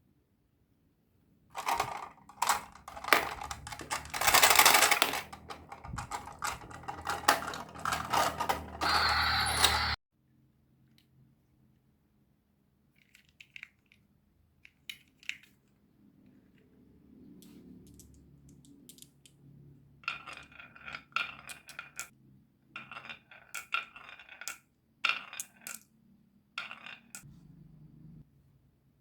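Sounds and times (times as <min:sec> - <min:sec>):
marbles clattering down a run: 0:01.6 - 0:08.8
faint low hum: 0:27.3 - 0:29.0.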